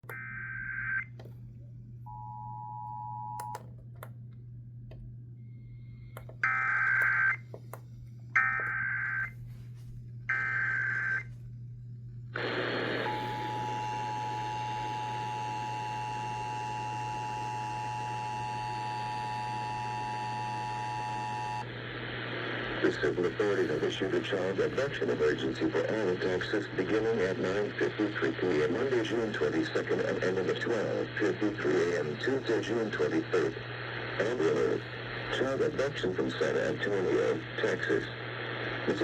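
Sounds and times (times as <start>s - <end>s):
low mains hum: 0.0s - 39.0s
noise burst: 21.6s - 39.0s.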